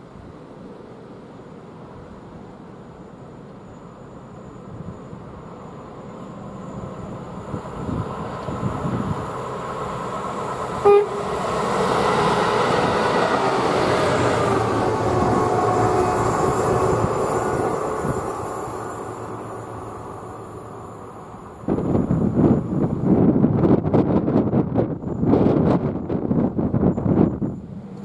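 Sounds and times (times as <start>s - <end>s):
train passing at speed: 0.0s - 28.0s
train horn toot: 10.8s - 11.4s.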